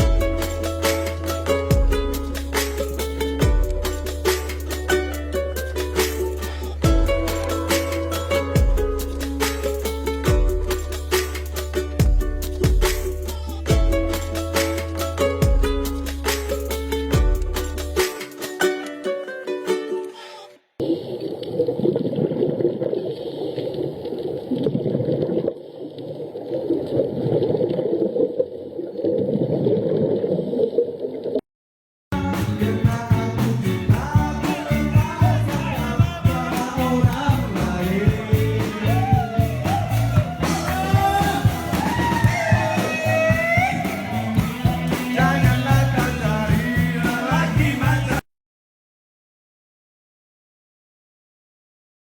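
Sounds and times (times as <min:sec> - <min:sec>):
song with singing and beat: 0:00.0 - 0:19.0, 0:32.2 - 0:48.2.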